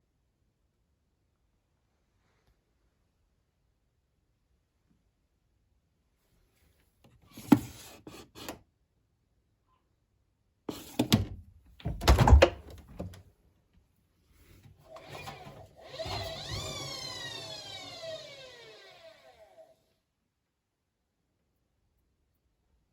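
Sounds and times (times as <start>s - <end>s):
washing machine clunks and knocks: 10.9s - 13.2s.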